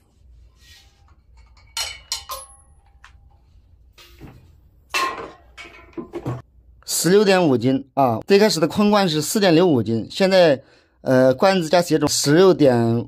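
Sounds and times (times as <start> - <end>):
metallic clinks on metal cylinders: 1.4 - 3.3.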